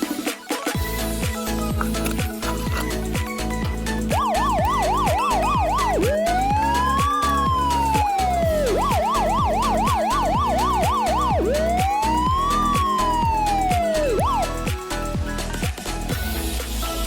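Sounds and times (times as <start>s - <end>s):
music with kick-drum beat: 0.0s - 17.0s
electronic siren yelping and wailing: 4.0s - 14.6s.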